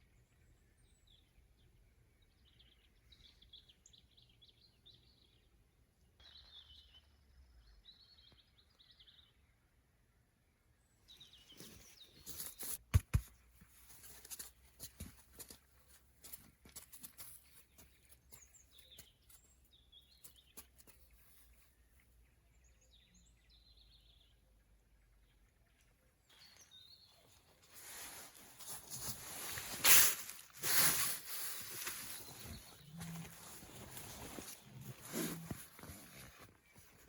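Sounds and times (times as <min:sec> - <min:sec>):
small birds chirping: 0:00.0 - 0:09.8, 0:10.7 - 0:37.0
rustling: 0:27.6 - 0:37.0.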